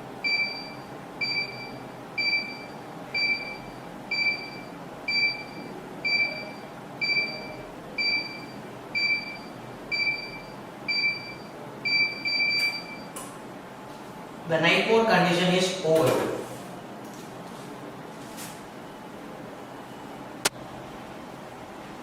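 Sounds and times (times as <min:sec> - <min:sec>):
alarm panel buzzer beeping: 0:00.2 - 0:13.2.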